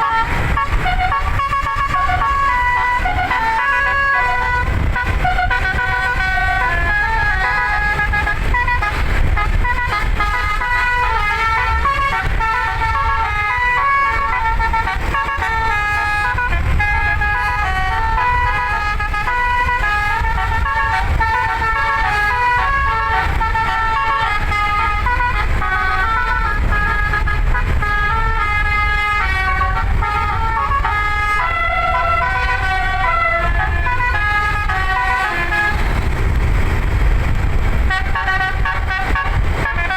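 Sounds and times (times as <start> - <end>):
musical air horn melody: 0.0 - 36.4, 37.8 - 39.9
steady low rumble: 0.0 - 39.9.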